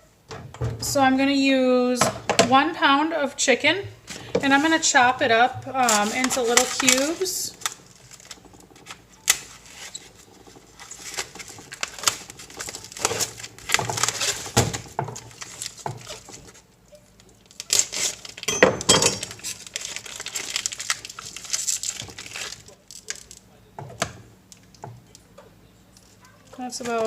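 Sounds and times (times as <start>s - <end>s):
plastic packaging crinkling and tearing: 5.7s - 16.6s, 17.2s - 18.5s, 19.2s - 23.5s.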